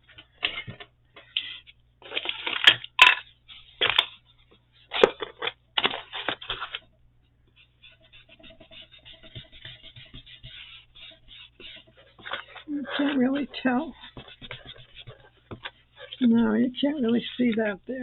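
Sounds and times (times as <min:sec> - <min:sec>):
tool scrubbing over paper: 0:07.6 - 0:17.5.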